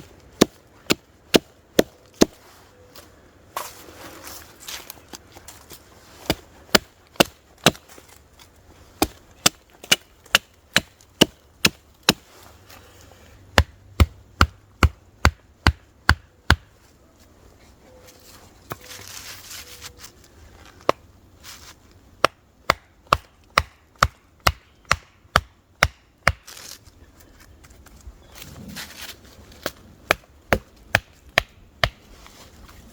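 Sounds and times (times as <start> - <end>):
wood being chopped: 0.3 - 2.4, 6.2 - 8.0, 9.0 - 12.3, 13.5 - 16.8, 22.2 - 26.6, 29.6 - 32.1.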